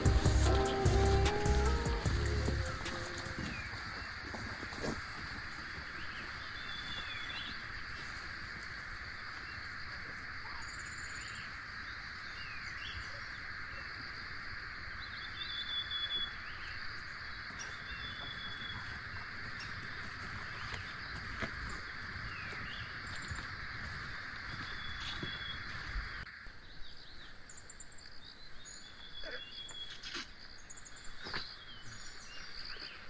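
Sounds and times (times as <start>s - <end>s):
birds chirping: 0.0s - 33.0s
insects chorus: 0.0s - 33.0s.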